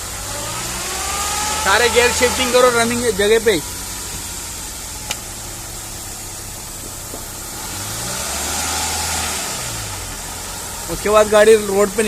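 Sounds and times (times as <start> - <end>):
car engine idling and revving: 0.0 - 12.0.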